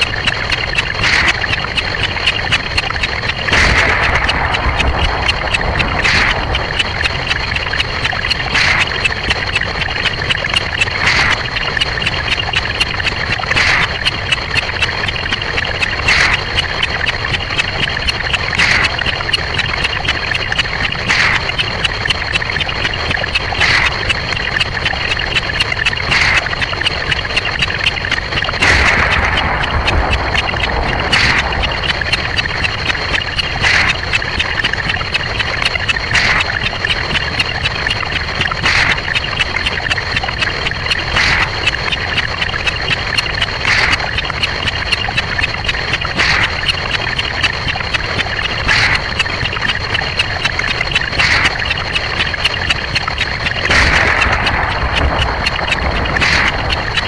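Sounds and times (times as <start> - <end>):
rapid blurred clicks: 0.0 - 57.0.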